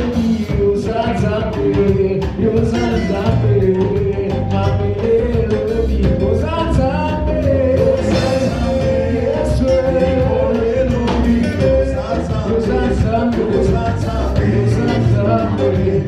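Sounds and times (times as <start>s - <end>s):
electric guitar: 0.0s - 16.0s
person singing: 0.0s - 16.0s
steady drumbeat: 0.0s - 16.0s.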